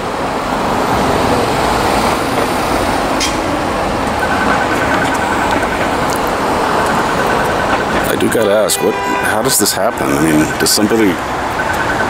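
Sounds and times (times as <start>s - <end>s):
city street traffic: 0.0s - 12.0s
large vehicle engine running: 0.8s - 12.0s
thin steady whine: 3.2s - 12.0s.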